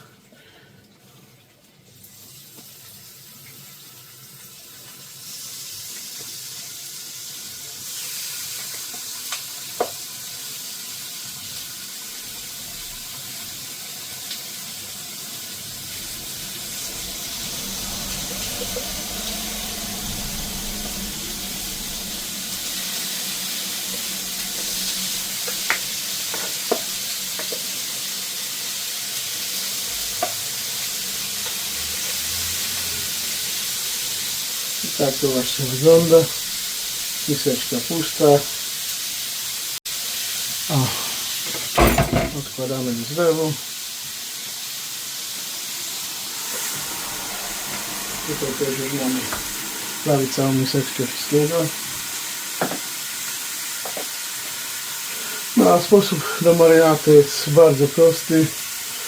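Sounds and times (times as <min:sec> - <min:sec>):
chicken sizzling in a pan: 0:00.0 - 0:59.0.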